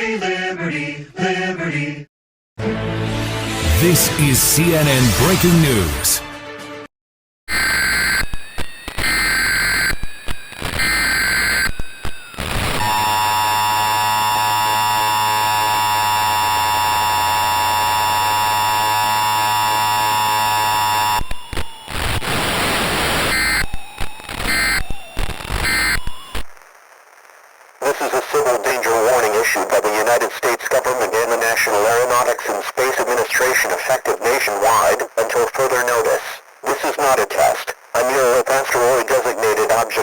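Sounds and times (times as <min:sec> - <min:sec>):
two-tone attention signal: 0:07.5 - 0:21.9, 0:23.2 - 0:26.4
screeching data bursts: 0:07.5 - 0:26.5
static noise: 0:07.5 - 0:40.0.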